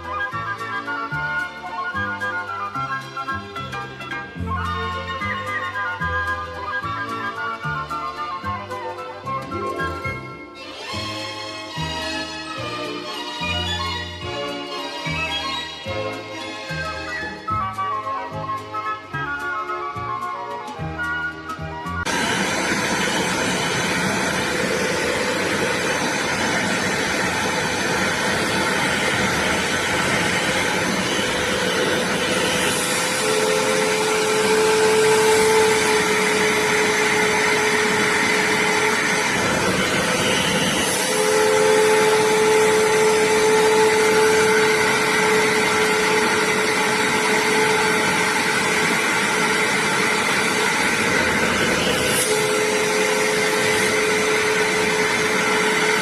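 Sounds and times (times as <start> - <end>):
suction motor whining: 8.0 - 12.6, 22.1 - 56.0.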